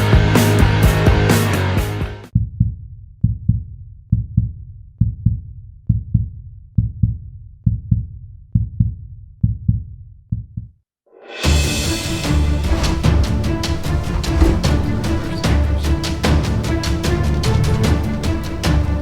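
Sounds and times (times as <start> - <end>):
music: 0.0 - 7.2, 11.1 - 19.0
heartbeat double thump: 12.5 - 16.7.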